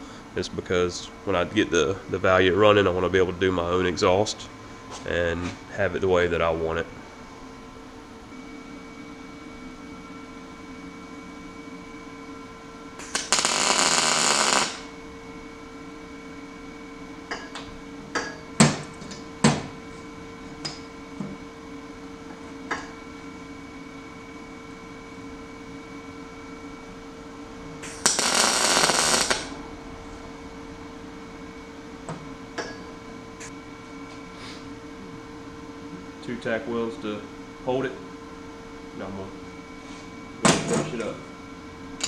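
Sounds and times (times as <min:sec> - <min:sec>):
steady hum: 0:00.0 - 0:42.0
welding arc crackle: 0:13.0 - 0:15.0, 0:27.8 - 0:29.6.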